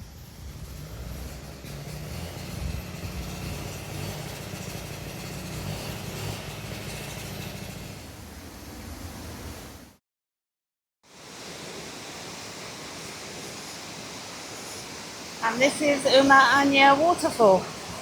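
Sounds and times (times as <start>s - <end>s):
waterfall rushing: 11.1s - 18.0s.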